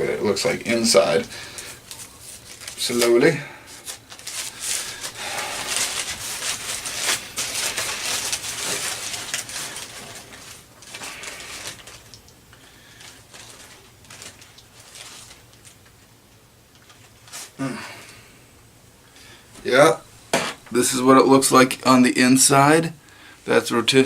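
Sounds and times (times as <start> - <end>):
paper wrapper crinkling: 0.1 - 16.1, 16.7 - 17.6.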